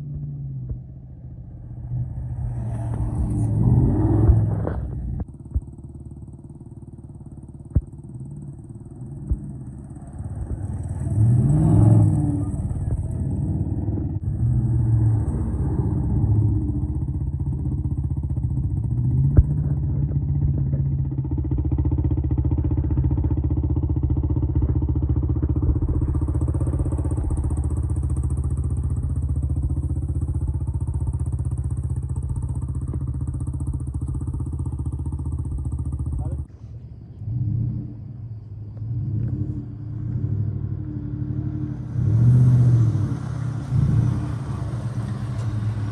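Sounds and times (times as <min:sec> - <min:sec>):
pickup truck engine revving: 0:01.6 - 0:05.1, 0:08.2 - 0:20.6, 0:38.8 - 0:45.9.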